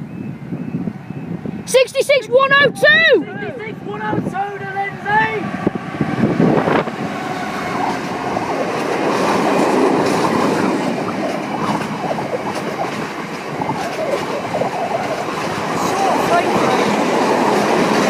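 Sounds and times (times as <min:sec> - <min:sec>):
freight train wheels clattering: 0:06.1 - 0:18.0.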